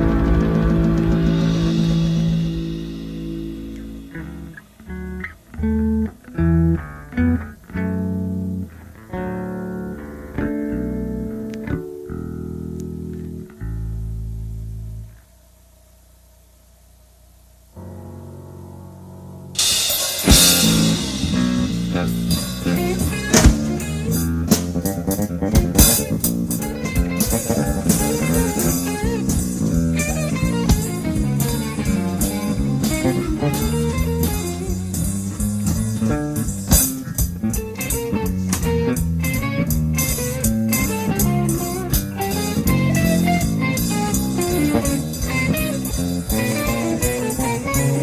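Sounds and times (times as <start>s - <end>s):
cymbal crash: 0.0s - 4.6s, 19.6s - 24.8s
drum kit playing: 0.0s - 5.1s, 19.5s - 48.0s
electric bass: 0.0s - 48.0s.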